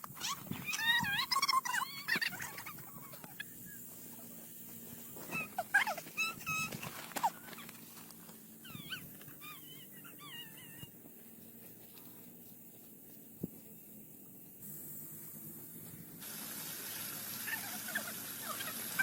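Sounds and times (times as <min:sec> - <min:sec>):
animal whimpering calls: 0:00.2 - 0:03.9, 0:05.3 - 0:07.8, 0:08.6 - 0:10.9.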